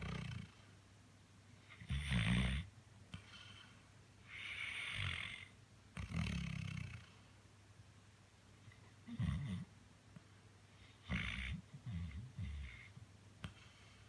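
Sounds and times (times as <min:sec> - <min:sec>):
dog snoring: 0:00.0 - 0:00.6, 0:01.7 - 0:03.6, 0:04.3 - 0:07.1, 0:09.1 - 0:09.7, 0:11.0 - 0:13.8.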